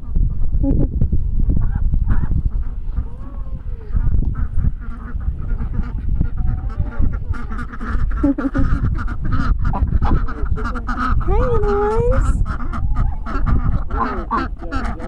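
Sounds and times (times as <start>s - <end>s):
heavy low rumble: 0.0s - 15.0s
waterfowl honking and calling: 1.5s - 15.0s.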